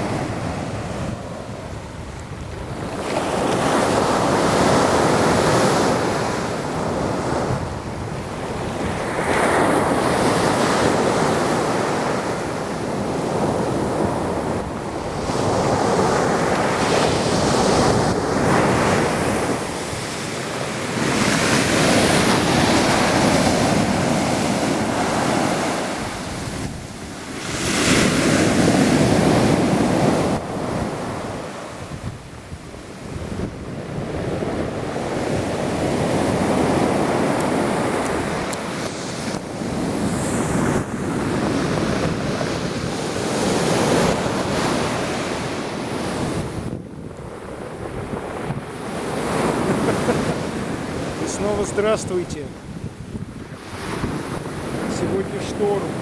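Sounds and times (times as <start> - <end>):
waves breaking: 8.4 - 32.0, 47.2 - 56.0
wind buffeting microphone: 20.9 - 56.0.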